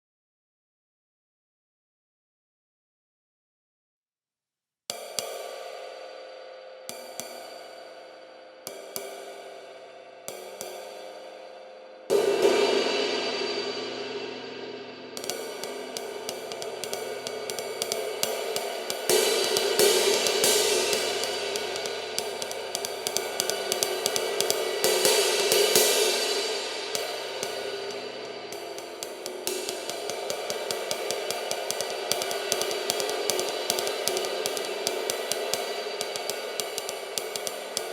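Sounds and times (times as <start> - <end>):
ride cymbal ringing: 12.1 - 37.9.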